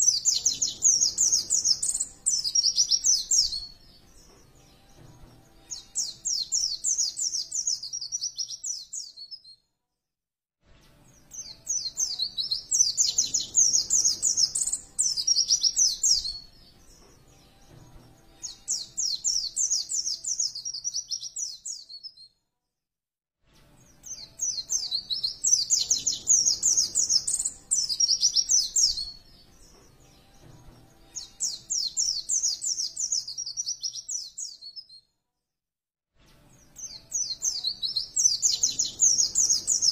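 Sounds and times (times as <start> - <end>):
bird twittering song: 0.0 - 9.6, 11.2 - 22.3, 23.8 - 35.0, 36.6 - 39.9.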